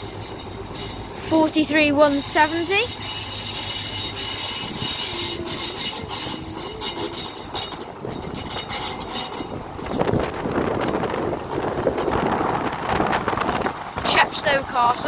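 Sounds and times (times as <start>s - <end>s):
train wheels squealing: 0.0s - 10.2s
train low rumble: 0.0s - 15.0s.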